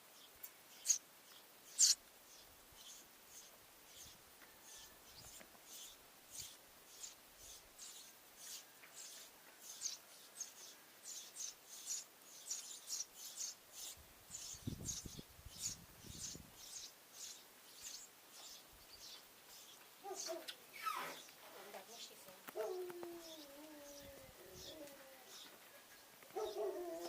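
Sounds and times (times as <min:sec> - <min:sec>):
sparrows chirping: 0:00.0 - 0:27.0.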